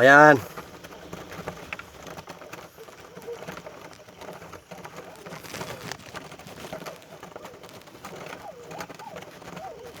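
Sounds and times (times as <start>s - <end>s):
clicks and rustling: 0.0s - 10.0s
pigeons calling with whistled notes: 2.7s - 4.1s, 5.0s - 10.0s.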